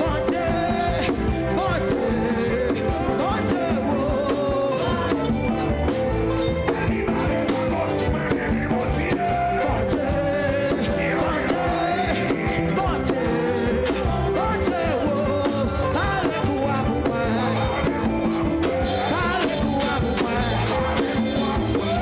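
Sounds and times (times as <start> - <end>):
church band music: 0.0 - 22.0
person singing: 0.0 - 22.0
steady drum beat: 0.0 - 22.0.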